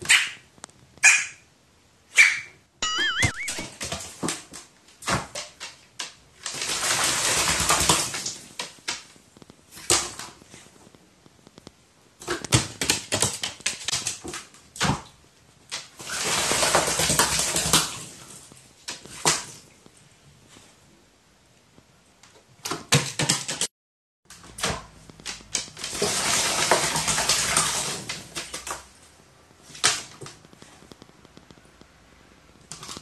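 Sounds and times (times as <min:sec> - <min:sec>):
rustling noise: 0:06.4 - 0:14.7, 0:17.8 - 0:21.1, 0:24.5 - 0:32.0.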